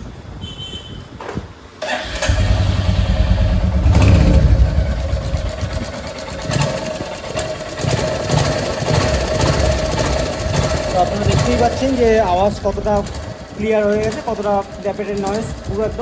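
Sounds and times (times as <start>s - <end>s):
light engine ticking: 1.8s - 16.0s
motorcycle engine starting and idling: 1.8s - 16.0s.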